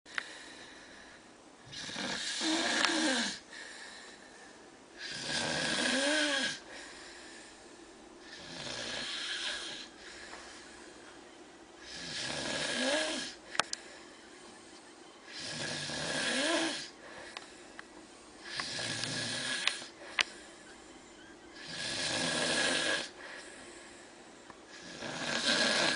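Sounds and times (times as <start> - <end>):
man snoring with whistling: 1.7 - 3.4, 5.0 - 6.6, 8.2 - 10.0, 11.8 - 13.4, 15.2 - 17.0, 18.4 - 19.9, 21.1 - 23.2, 24.7 - 25.9.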